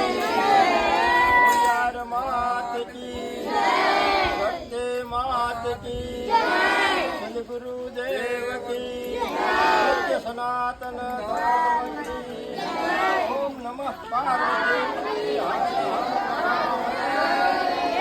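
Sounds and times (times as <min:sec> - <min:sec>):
group of voices chanting: 0:00.0 - 0:01.8, 0:02.6 - 0:04.8, 0:06.1 - 0:07.5, 0:08.5 - 0:10.3, 0:11.1 - 0:13.6, 0:14.2 - 0:18.0.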